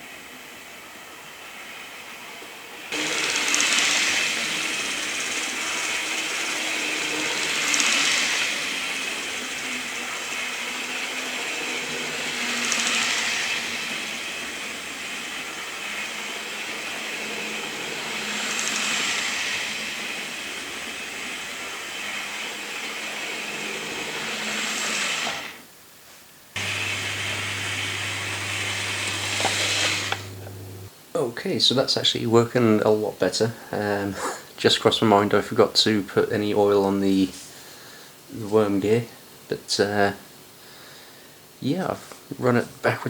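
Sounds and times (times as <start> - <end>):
model locomotive motor whirring: 1.2 - 25.7, 26.6 - 30.9
steady low hum: 26.6 - 30.9.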